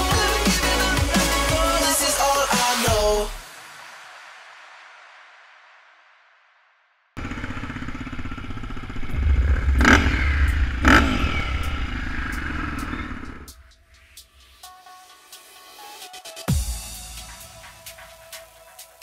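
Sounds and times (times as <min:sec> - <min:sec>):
background music: 0:00.0 - 0:03.7, 0:13.5 - 0:19.0
motorcycle engine revving: 0:07.2 - 0:13.5.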